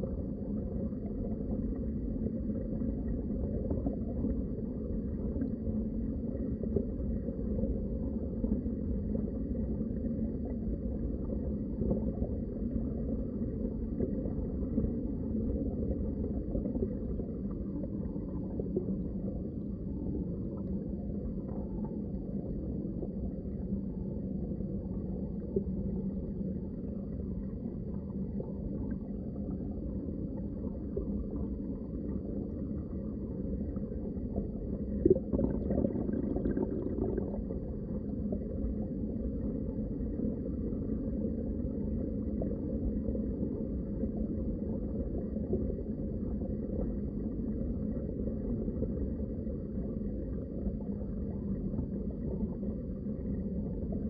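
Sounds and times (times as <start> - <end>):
muffled underwater rumble: 0.0 - 54.0
faint gurgling: 27.9 - 40.3.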